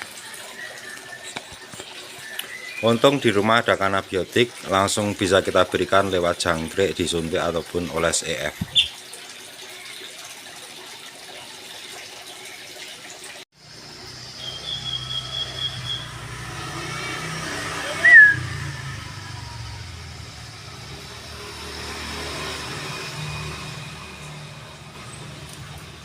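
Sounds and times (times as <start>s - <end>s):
bird chirp: 0.5s - 3.4s, 8.6s - 9.0s, 14.2s - 16.2s
low engine rumble: 13.6s - 26.0s
thin high whistled note: 17.8s - 19.0s.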